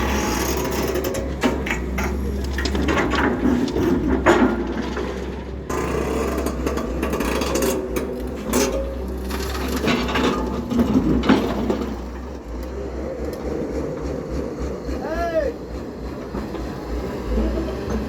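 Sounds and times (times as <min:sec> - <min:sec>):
knocks and clanks: 0:00.0 - 0:13.4
excavator diesel engine rumbling: 0:00.0 - 0:18.0.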